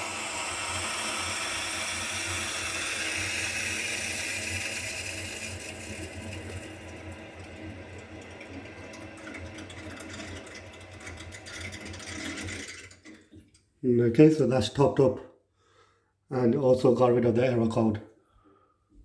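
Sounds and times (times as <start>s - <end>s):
water hissing through valve: 0.0s - 13.4s.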